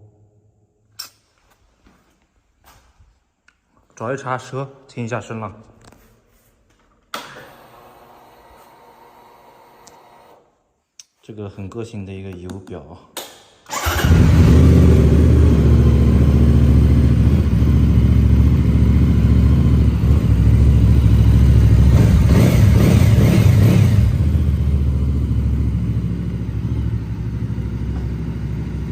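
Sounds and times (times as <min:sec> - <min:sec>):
motorcycle engine revving: 0:13.7 - 0:28.9.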